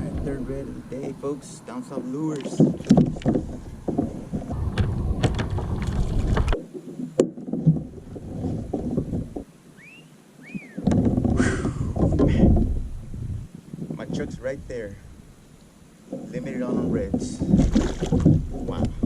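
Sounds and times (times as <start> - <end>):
wind buffeting microphone: 0.0 - 1.6, 2.4 - 6.6, 7.7 - 9.5, 10.8 - 15.4, 16.2 - 19.0
water sloshing: 0.0 - 9.5, 15.9 - 19.0
paddle knocking against hull: 2.4 - 9.5, 10.8 - 12.9, 16.1 - 19.0.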